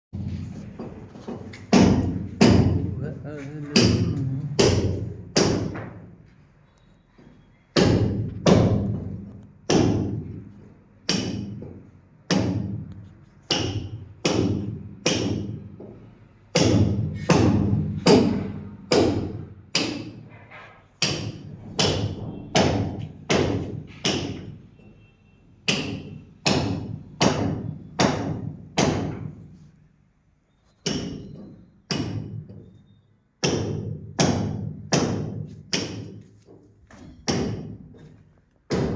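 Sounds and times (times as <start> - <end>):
hammer blows ringing: 21.0 - 29.4.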